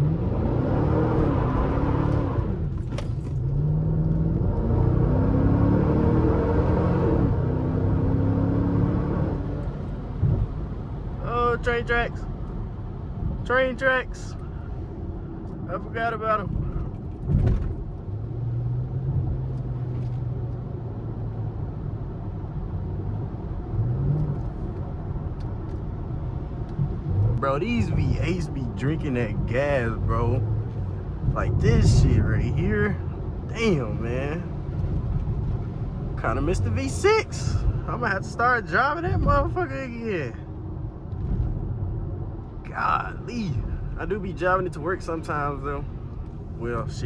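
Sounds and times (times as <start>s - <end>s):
car engine accelerating: 0.0s - 10.6s, 22.9s - 47.0s.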